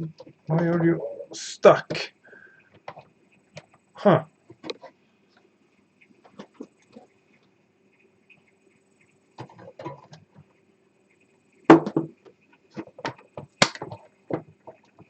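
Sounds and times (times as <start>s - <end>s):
hands clicking and knocking on parts: 11.7s - 15.0s.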